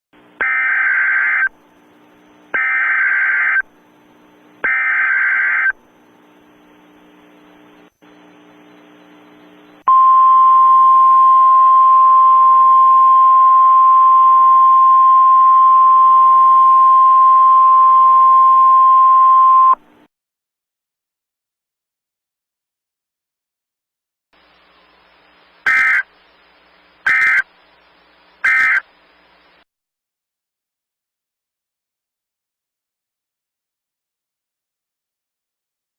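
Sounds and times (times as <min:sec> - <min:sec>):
harsh data screech bursts: 0:00.4 - 0:01.5, 0:02.6 - 0:03.6, 0:04.6 - 0:05.8, 0:25.7 - 0:26.1, 0:27.0 - 0:27.5, 0:28.4 - 0:28.8.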